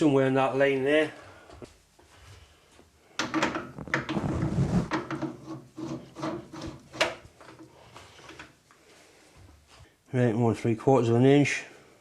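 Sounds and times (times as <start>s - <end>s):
scriber scraping steel: 4.2s - 7.1s.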